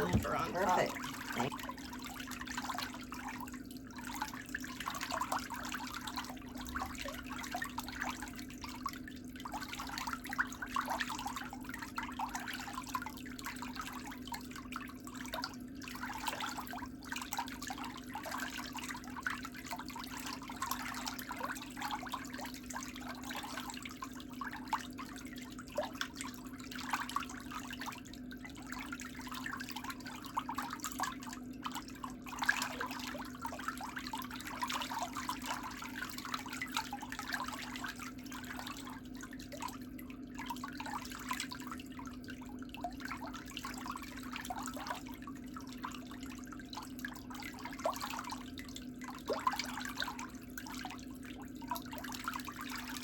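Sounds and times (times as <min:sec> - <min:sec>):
low steady hum: 0:00.0 - 0:10.1
water trickling: 0:00.0 - 0:53.0.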